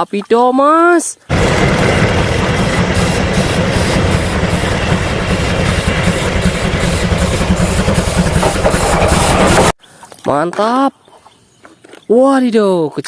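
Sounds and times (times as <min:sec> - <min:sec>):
train running noise: 0:01.3 - 0:09.8.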